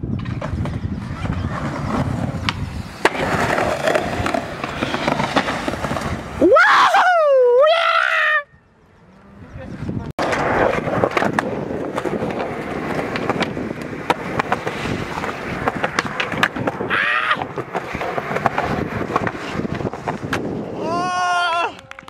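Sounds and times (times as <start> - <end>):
skateboard wheels rolling on pavement: 0.0 - 22.0
skateboard clacking: 0.1 - 6.3, 10.2 - 20.8, 21.6 - 22.0.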